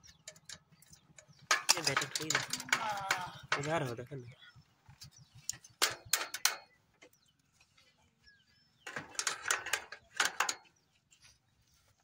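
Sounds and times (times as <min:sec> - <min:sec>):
metal spanner clinking: 0:00.2 - 0:03.8.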